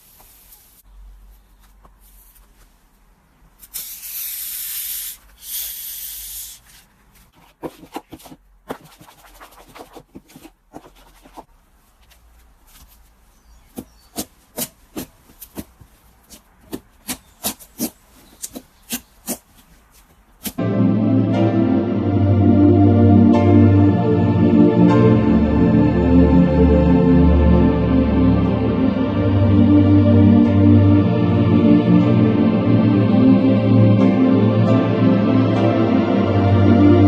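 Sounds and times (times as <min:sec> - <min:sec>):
hissing bursts: 0:03.6 - 0:06.6.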